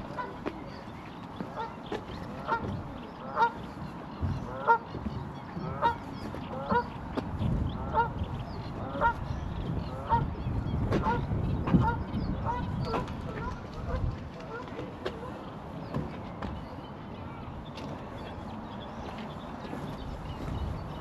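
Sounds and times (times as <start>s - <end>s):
geese honking: 2.4s - 3.6s, 5.6s - 7.0s, 7.8s - 8.2s, 9.9s - 10.4s, 11.0s - 14.6s.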